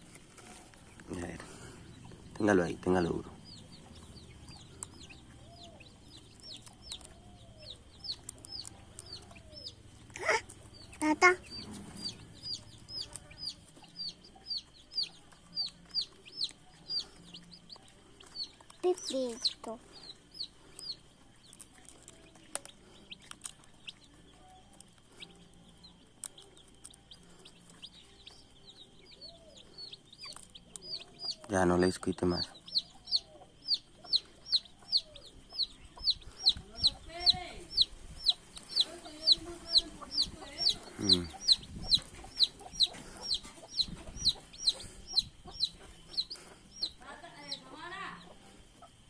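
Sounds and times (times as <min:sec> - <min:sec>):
chicks peeping: 0:00.0 - 0:49.0
hen clucking: 0:00.4 - 0:21.1, 0:27.1 - 0:49.0.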